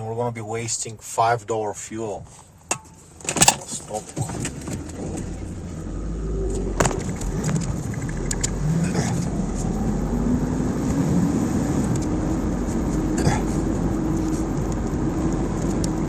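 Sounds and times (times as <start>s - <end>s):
car engine starting and accelerating: 4.1s - 16.0s.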